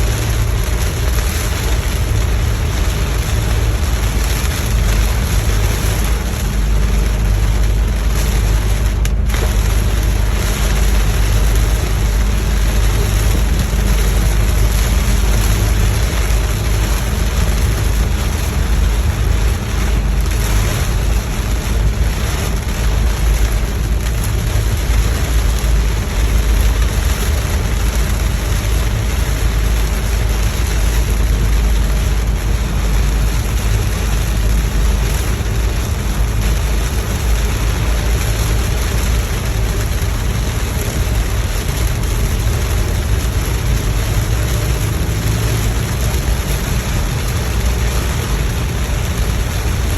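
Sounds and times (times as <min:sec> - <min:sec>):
rain hissing: 0:00.0 - 0:49.9
road and engine rumble: 0:00.0 - 0:49.9.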